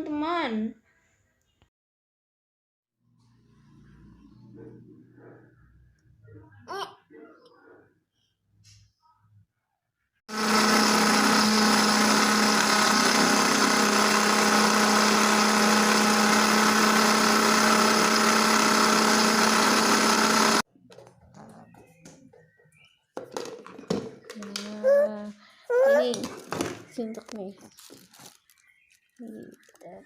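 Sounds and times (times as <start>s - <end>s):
electric blender running: 10.3s - 20.7s.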